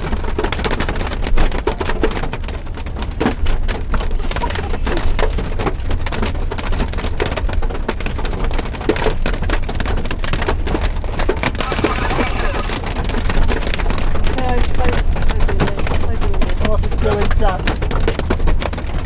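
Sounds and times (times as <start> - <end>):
hail pelting a vehicle roof: 0.0 - 19.0.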